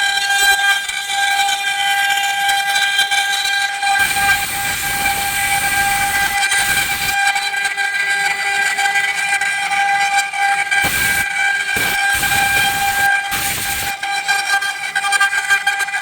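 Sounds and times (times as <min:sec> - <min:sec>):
router spindles whining: 0:04.0 - 0:07.2, 0:10.8 - 0:11.2, 0:11.8 - 0:14.0.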